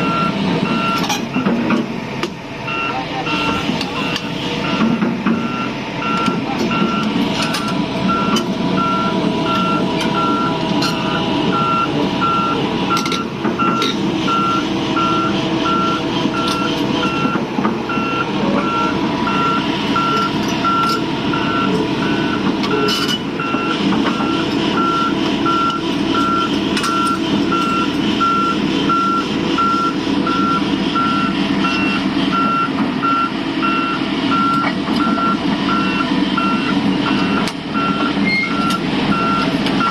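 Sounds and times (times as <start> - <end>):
excavator diesel engine drone: 0.0 - 39.9
sharp knocks and clanks: 1.0 - 2.4, 3.6 - 8.6
reversing alarm short beeps: 2.7 - 39.9.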